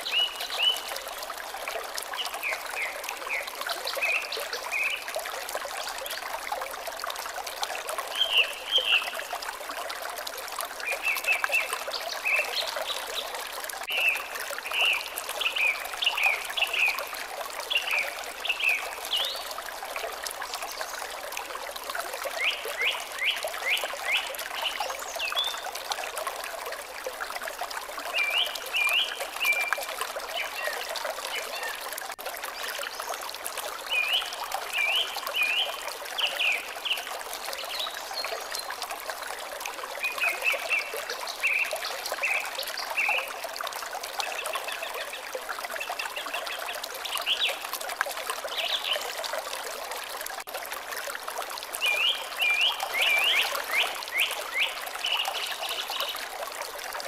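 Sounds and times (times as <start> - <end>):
water trickling: 0.0 - 57.0
songbird singing: 51.8 - 56.2.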